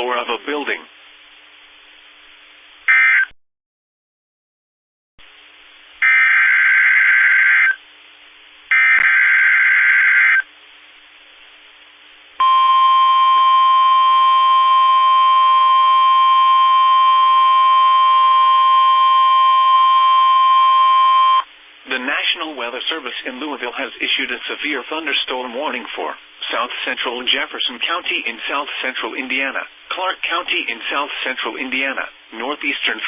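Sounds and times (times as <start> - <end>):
long steady warning alarm tone: 6.0 - 7.8, 8.7 - 10.4, 12.4 - 21.4.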